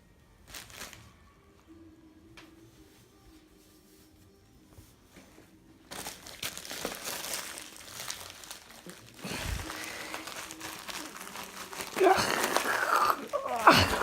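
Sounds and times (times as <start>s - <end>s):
packaging crinkling and rustling: 0.4s - 1.2s, 5.9s - 14.0s.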